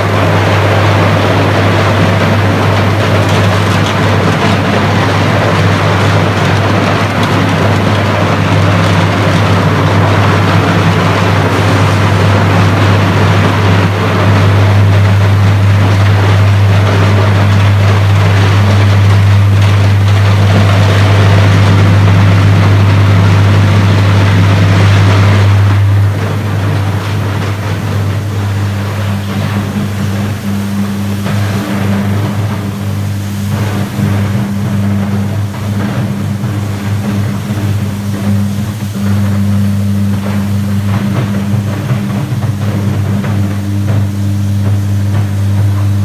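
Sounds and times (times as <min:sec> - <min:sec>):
deep furnace hum: 0:00.0 - 0:46.0
electric arc crackling: 0:00.0 - 0:46.0.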